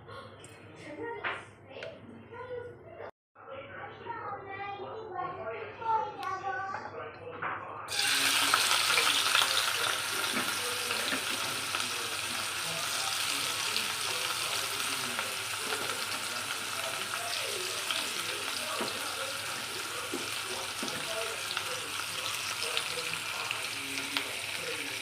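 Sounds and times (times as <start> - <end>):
food sizzling in hot oil: 7.9 - 25.0.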